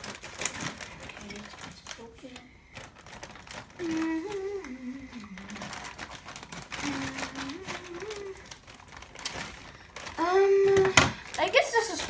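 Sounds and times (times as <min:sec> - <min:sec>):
packaging crinkling: 0:00.0 - 0:12.0
scissors cutting package: 0:00.0 - 0:12.0
child humming: 0:03.8 - 0:05.7, 0:06.7 - 0:08.6, 0:10.2 - 0:11.1.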